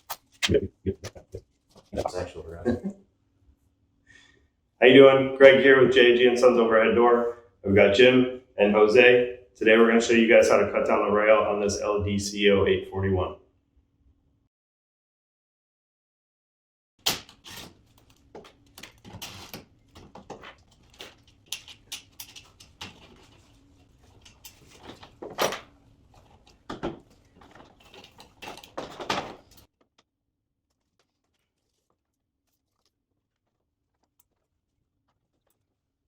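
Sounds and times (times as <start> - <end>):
tools clicking and scraping on metal: 17.0 - 29.7.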